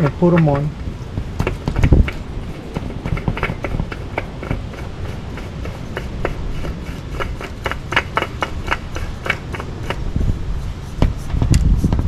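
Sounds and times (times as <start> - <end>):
oil filter clicking and scraping: 0.0 - 12.0
heavier knocks: 0.4 - 4.7.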